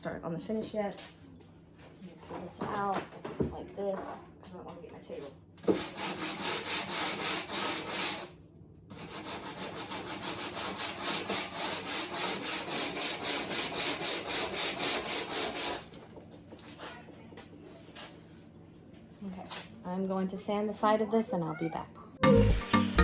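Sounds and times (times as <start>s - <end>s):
sandpaper rubbing on wood: 5.7s - 8.3s, 9.0s - 15.8s.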